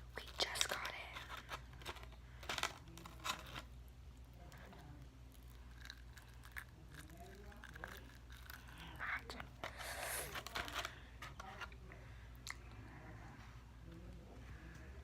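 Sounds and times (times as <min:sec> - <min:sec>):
fried chicken crust crackling: 0:00.4 - 0:03.7, 0:04.4 - 0:11.6.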